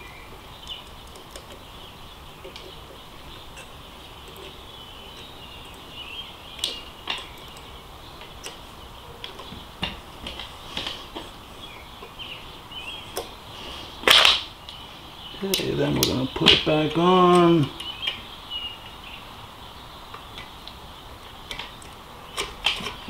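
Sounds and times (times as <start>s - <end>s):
birds chirping faintly: 0.0s - 23.0s
metal brake parts clicking: 2.4s - 11.4s.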